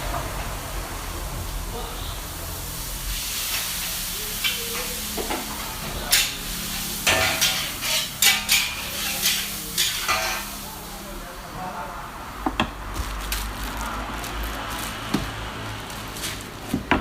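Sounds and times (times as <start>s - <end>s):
food sizzling in a pan: 1.9s - 11.3s
utensil clanking and scraping pan: 4.4s - 10.6s.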